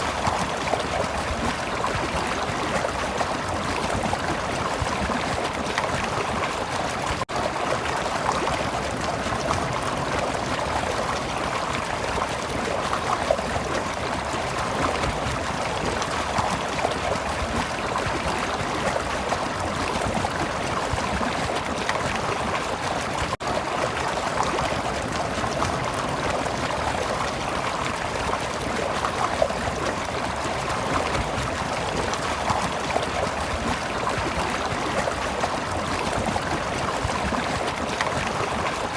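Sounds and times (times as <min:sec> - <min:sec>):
stream water rushing and gurgling: 0:00.0 - 0:38.9.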